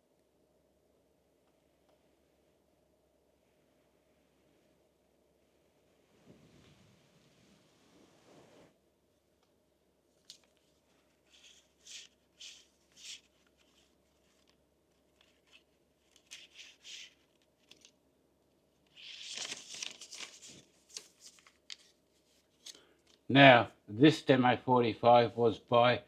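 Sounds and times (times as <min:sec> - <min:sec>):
faint rustling and scrapes: 0:03.3 - 0:08.8, 0:10.1 - 0:18.0, 0:18.8 - 0:23.3.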